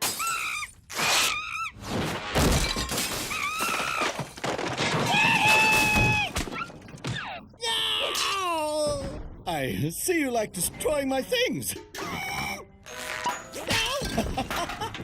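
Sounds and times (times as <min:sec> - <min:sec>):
cartoon crashes and shattering: 0:01.0 - 0:06.8.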